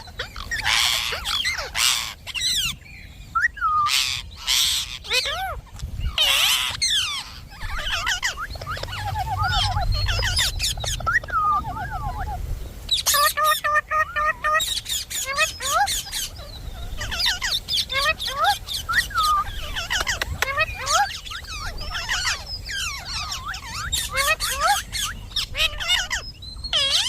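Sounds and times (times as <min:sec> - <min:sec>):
parrot chattering: 0:03.8 - 0:27.0
parrot rattling trills: 0:03.9 - 0:12.1.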